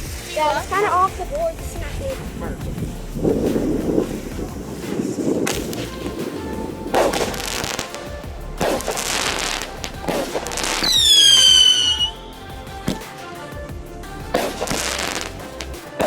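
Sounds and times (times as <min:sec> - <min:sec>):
firework shots with hissing tails: 0:00.0 - 0:16.0
whistling firework shot: 0:04.8 - 0:13.5.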